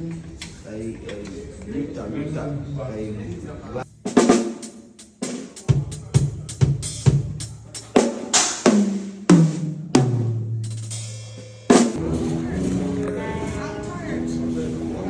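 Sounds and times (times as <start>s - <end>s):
drum kit hits: 4.1s - 12.4s.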